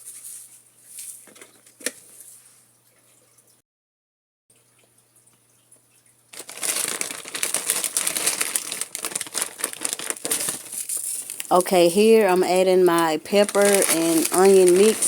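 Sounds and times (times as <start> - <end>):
plastic bag crinkling: 6.3 - 15.0.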